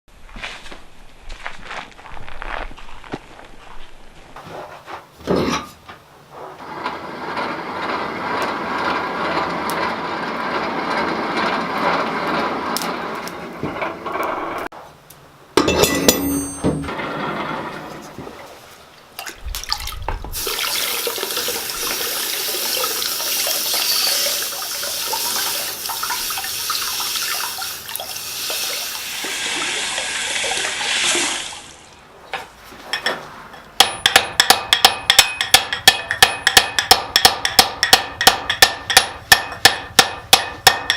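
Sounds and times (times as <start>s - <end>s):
hammer blows on metal anvil: 15.6s - 17.0s, 33.8s - 40.9s.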